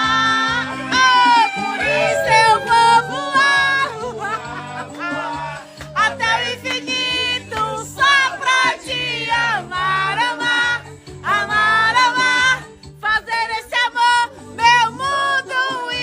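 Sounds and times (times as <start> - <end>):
person singing: 0.0 - 10.6
bass line: 0.0 - 13.2
live band: 0.0 - 15.8.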